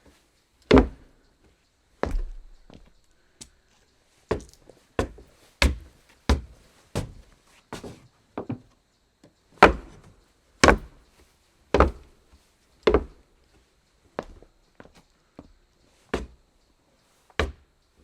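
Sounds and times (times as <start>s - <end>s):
footsteps on wooden floor: 2.0s - 3.5s, 4.3s - 8.6s.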